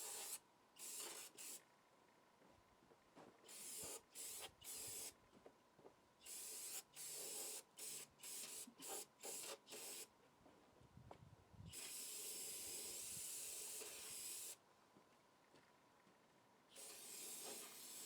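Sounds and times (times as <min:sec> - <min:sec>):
aerosol spray can hissing: 0:03.5 - 0:05.1, 0:11.7 - 0:14.6, 0:16.8 - 0:18.0.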